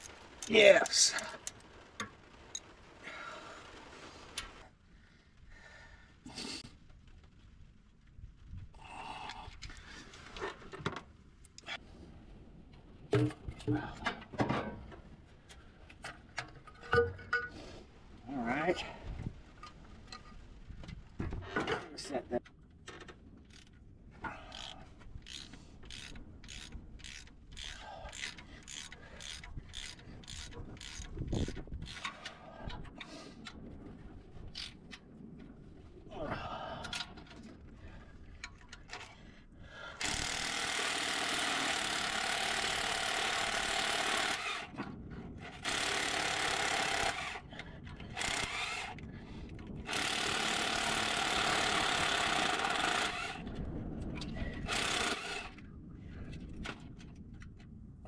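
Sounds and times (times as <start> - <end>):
power tool running: 40.0 - 44.7, 45.6 - 47.4, 49.9 - 53.4, 54.7 - 55.5.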